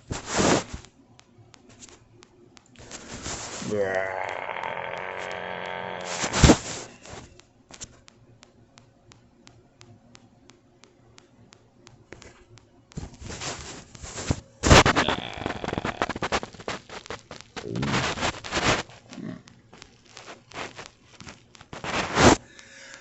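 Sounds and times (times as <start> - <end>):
man burping: 3.6 - 6.6, 14.8 - 16.2
faint ticks: 22.4 - 23.0.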